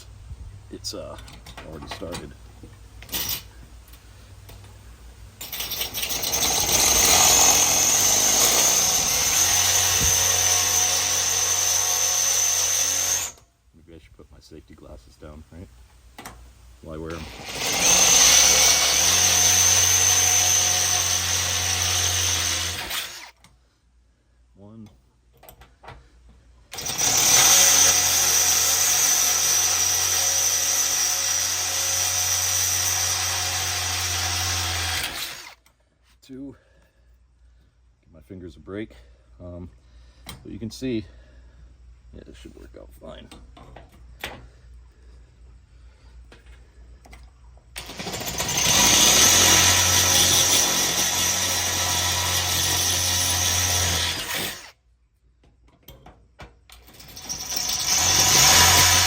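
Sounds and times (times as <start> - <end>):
power drill whining into metal: 5.4 - 13.5, 17.1 - 23.4, 26.7 - 35.7, 47.7 - 54.8, 56.7 - 59.0.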